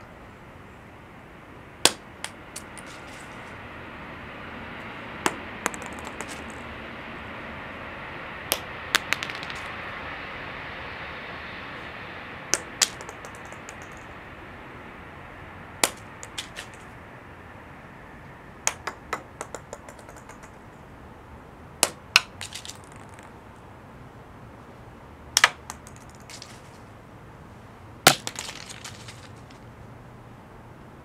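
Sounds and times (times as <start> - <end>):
faint steady hiss: 0.0 - 31.0
acorns dropping on stone: 1.8 - 3.6, 5.3 - 6.6, 8.5 - 9.8, 12.6 - 14.1, 15.8 - 16.9, 18.6 - 20.6, 21.8 - 23.3, 25.4 - 26.8, 28.1 - 29.6.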